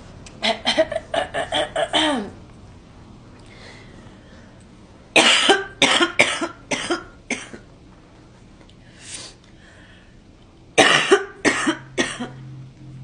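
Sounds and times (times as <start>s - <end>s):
girl coughing: 0.4s - 2.4s, 5.2s - 7.7s, 10.8s - 12.4s.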